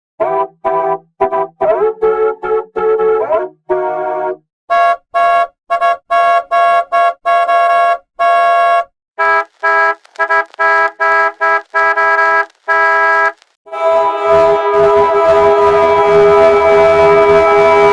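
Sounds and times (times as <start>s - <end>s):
bus horn honking: 4.7s - 17.9s.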